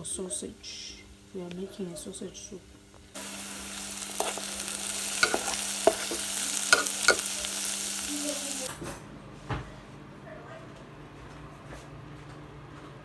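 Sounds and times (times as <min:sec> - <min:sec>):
food sizzling in a pan: 0:00.4 - 0:08.8
utensil stirring and scraping: 0:03.2 - 0:08.7.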